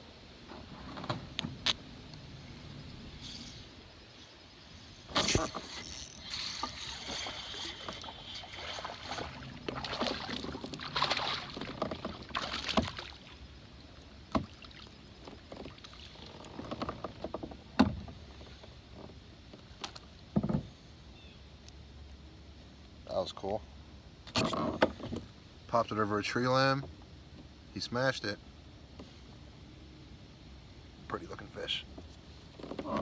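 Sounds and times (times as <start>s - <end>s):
water splashing around kayak: 5.0s - 20.7s
knocks against hull: 9.1s - 13.1s
rustling and bumping: 9.7s - 13.0s.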